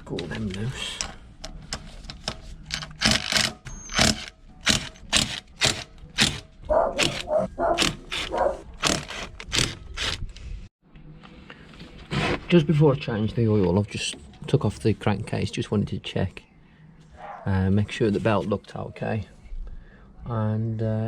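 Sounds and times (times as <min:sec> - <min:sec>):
wrench clicking on bolts: 0:02.7 - 0:06.4.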